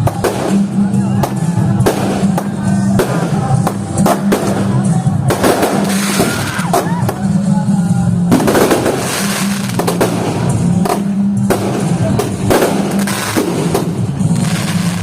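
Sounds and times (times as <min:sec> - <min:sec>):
fireworks banging: 0:00.0 - 0:07.6, 0:08.2 - 0:15.0
fireworks crackling: 0:00.0 - 0:15.0
loud music with bass line: 0:00.0 - 0:15.0.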